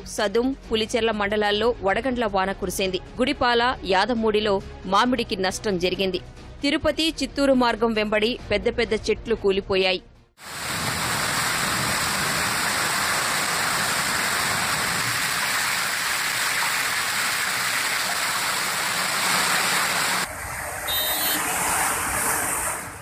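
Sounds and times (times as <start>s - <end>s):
heavy rain pouring: 10.4s - 23.0s.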